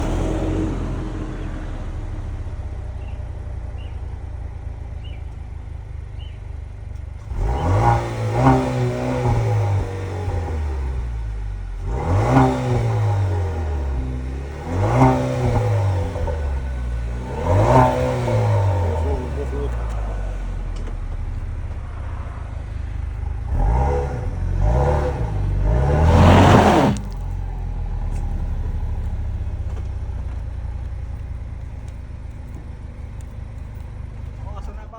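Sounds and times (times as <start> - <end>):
car engine revving: 0.0 - 34.9.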